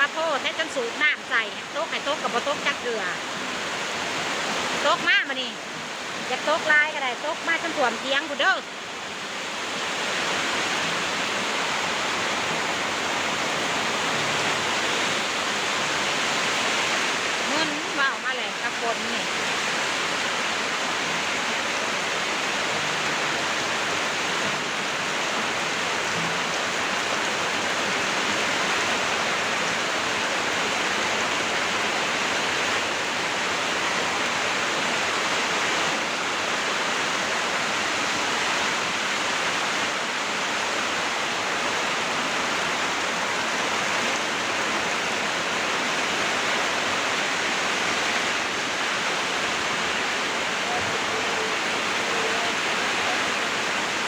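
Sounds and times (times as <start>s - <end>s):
storm water rushing: 0.0s - 54.0s.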